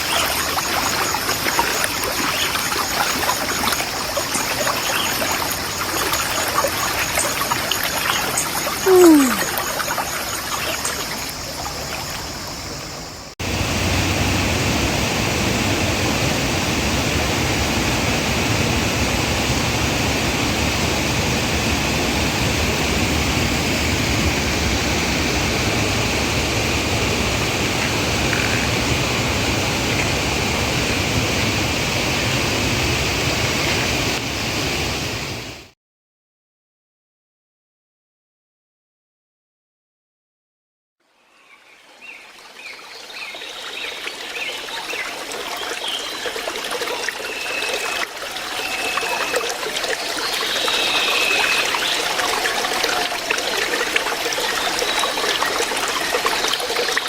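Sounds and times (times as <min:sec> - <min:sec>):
water trickling: 0:00.0 - 0:14.5, 0:42.3 - 0:57.0
rushing water: 0:00.0 - 0:35.7, 0:41.7 - 0:57.0
falling tone: 0:08.9 - 0:09.5.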